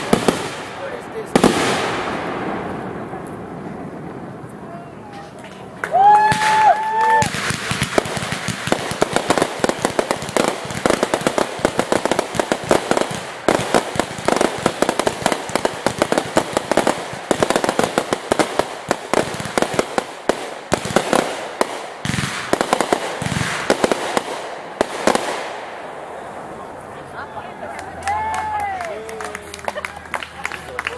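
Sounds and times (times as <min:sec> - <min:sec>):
deep firework booms: 0:00.0 - 0:04.6, 0:07.2 - 0:26.0
fireworks crackling: 0:00.0 - 0:30.9.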